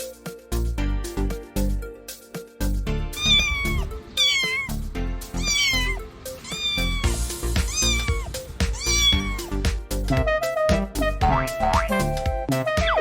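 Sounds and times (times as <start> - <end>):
background music with steady beat: 0.0 - 13.0
cat meowing: 3.2 - 9.7.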